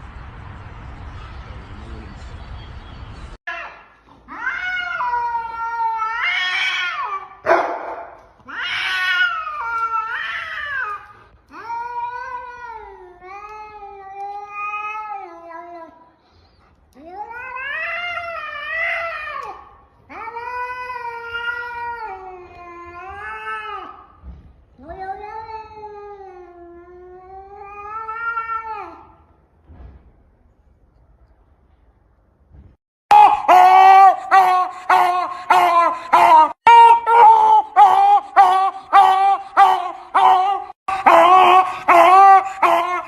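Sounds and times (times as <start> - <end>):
animal wailing: 33.1 - 43.0.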